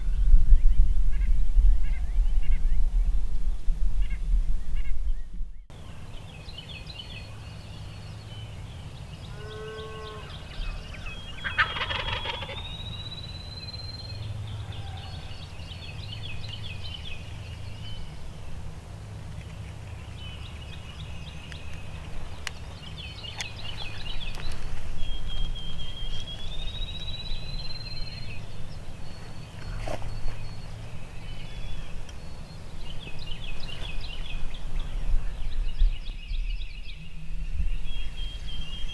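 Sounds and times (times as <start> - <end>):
low wind rumble: 0.0 - 38.9
songbirds chattering and whistling: 0.0 - 38.9
turkey gobbling: 10.5 - 12.8.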